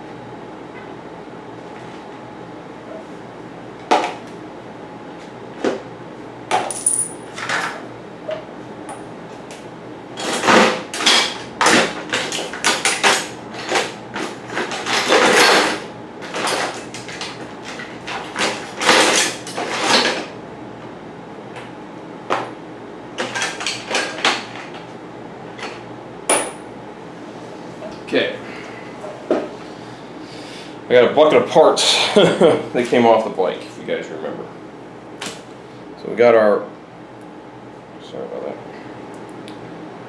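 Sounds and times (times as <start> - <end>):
metal bike parts rattling in bucket: 10.2 - 20.2.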